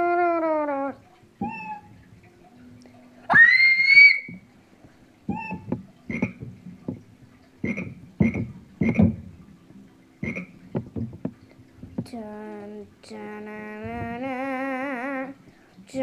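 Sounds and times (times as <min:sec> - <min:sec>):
keyboard croaking notes: 0:00.0 - 0:03.6, 0:05.2 - 0:09.2, 0:10.2 - 0:11.0
keyboard rising whistle sweep: 0:03.3 - 0:04.3.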